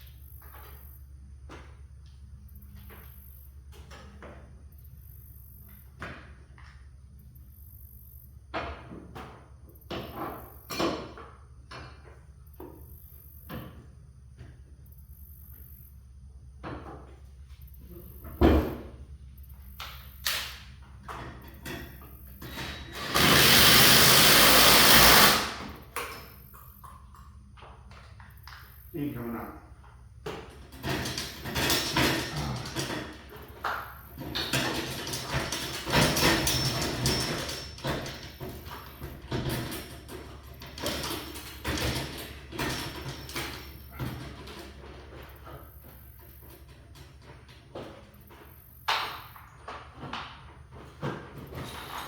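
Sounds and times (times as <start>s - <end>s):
power driver driving screw into wood: 22.4s - 26.1s
clatter of tools being handled: 30.2s - 52.0s.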